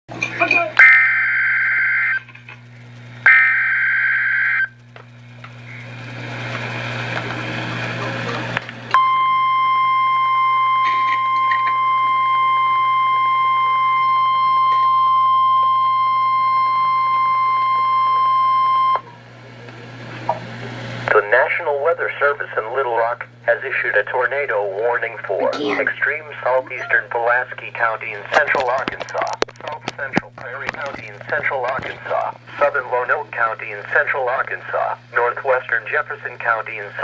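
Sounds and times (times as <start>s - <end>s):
low steady hum: 0.1s - 6.5s, 8.0s - 20.3s, 21.1s - 37.0s
steady warning alarm tone: 0.8s - 4.9s, 8.9s - 19.1s.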